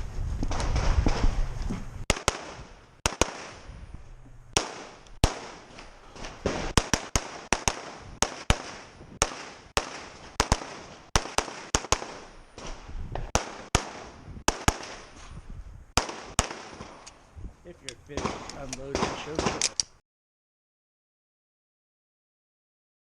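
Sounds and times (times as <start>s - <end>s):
gunshots: 2.1s - 3.8s, 4.5s - 15.2s, 16.0s - 17.1s, 18.1s - 19.8s.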